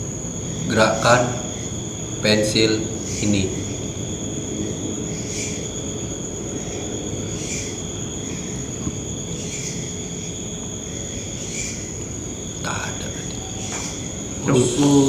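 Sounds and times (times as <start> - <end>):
crickets trilling: 0.0 - 15.0
low rumbling hiss: 0.0 - 15.0.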